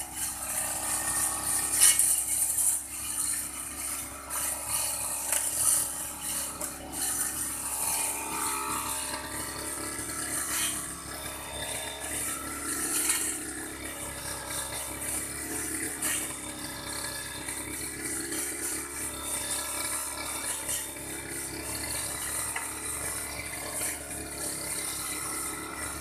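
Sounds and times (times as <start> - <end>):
brush cutter cutting grass: 0.0 - 26.0.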